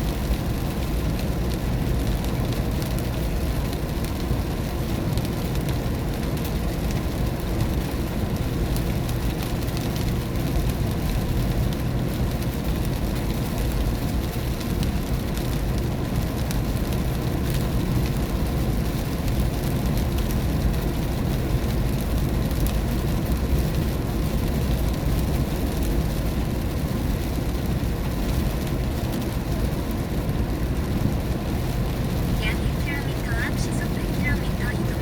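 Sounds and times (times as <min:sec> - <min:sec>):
rain hissing: 0:32.0 - 0:35.0
tyres and engine rumble: 0:32.1 - 0:35.0.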